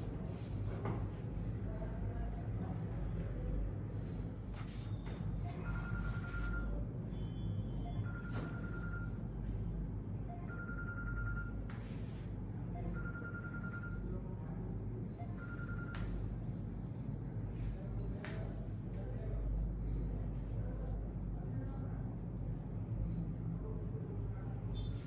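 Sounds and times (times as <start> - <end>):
steady low hum: 0.0 - 25.0
phone ringing with trill: 5.5 - 6.8, 7.9 - 9.5, 10.3 - 11.7, 12.8 - 14.3, 15.2 - 16.3.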